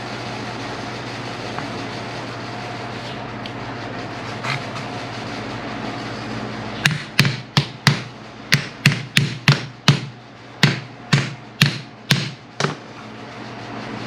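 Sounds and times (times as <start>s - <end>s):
sharp metal taps: 6.8s - 12.7s.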